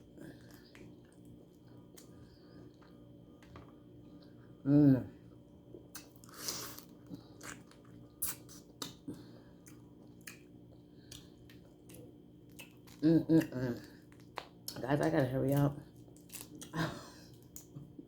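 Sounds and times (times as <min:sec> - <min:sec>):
chewing: 0:00.1 - 0:03.0, 0:05.7 - 0:17.9
wet mouth clicks and smacks: 0:05.9 - 0:06.3.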